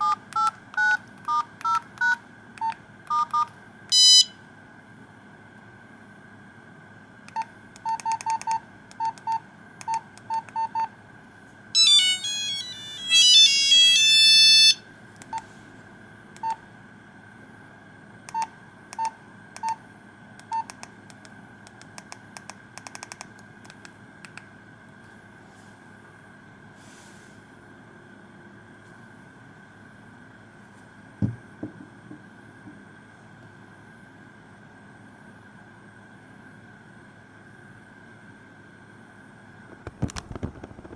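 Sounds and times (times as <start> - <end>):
phone key beeps: 0.0 - 4.3, 7.3 - 10.9, 11.8 - 15.4, 16.4 - 16.6, 18.3 - 19.8, 20.4 - 20.9
square-wave phone melody: 11.8 - 14.8.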